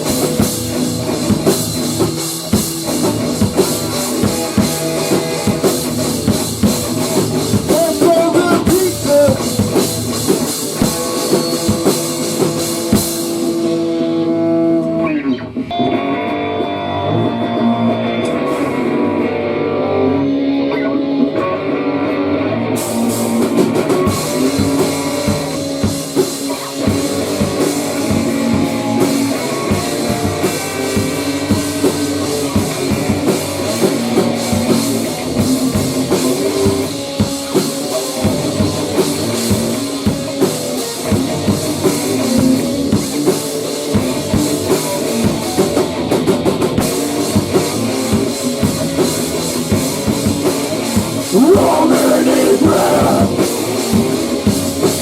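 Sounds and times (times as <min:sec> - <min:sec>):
drums and cymbals: 0:00.0 - 0:14.2, 0:22.8 - 0:55.0
electric guitar riff: 0:13.5 - 0:23.0, 0:51.2 - 0:53.7.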